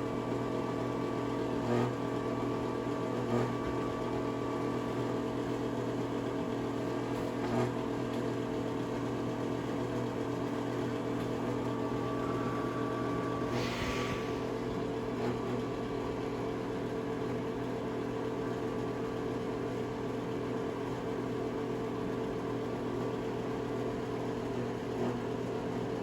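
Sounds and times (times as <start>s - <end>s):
exhaust fan whirring: 0.0s - 21.9s.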